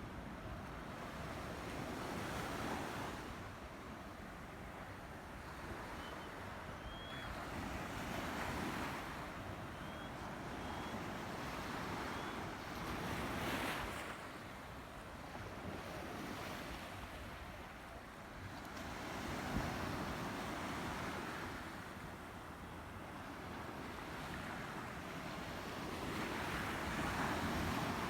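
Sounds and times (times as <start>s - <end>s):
faint high chirps: 9.8s - 11.0s.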